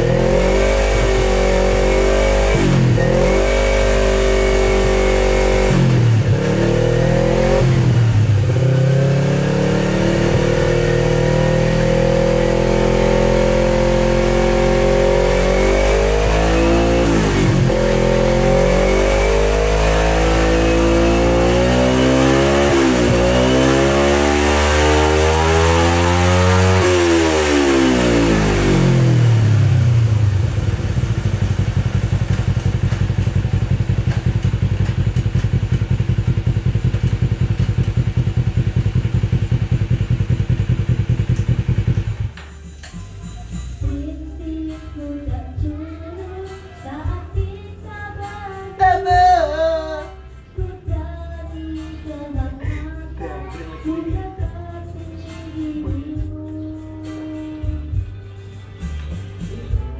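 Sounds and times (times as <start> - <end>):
motorcycle engine revving: 0.0 - 42.4.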